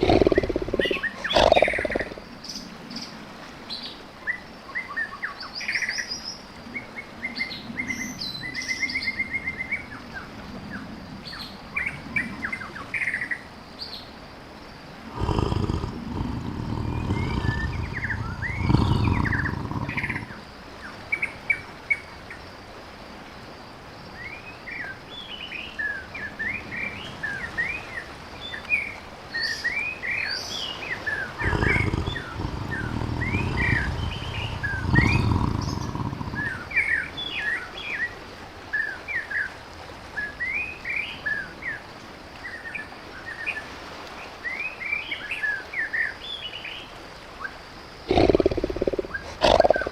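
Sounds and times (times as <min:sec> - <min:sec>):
tiger roaring: 0:00.0 - 0:02.2, 0:15.1 - 0:20.4, 0:31.3 - 0:36.9, 0:48.1 - 0:49.9
small birds chirping: 0:00.0 - 0:02.3, 0:15.2 - 0:20.4, 0:31.2 - 0:37.4, 0:48.1 - 0:49.9.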